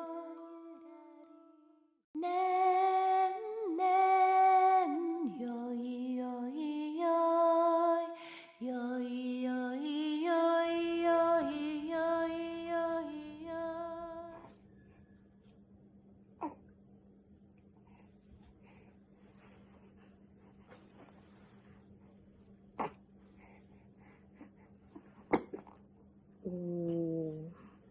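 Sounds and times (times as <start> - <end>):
woman humming a lullaby: 0.0 - 1.6, 2.2 - 14.6, 26.4 - 27.7.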